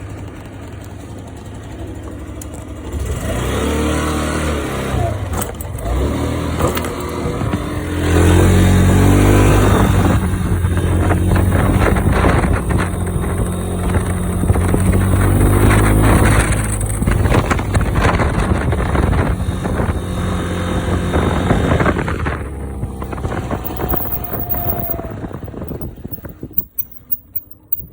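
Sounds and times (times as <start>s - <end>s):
plastic vibrating noise: 23.1s - 25.0s.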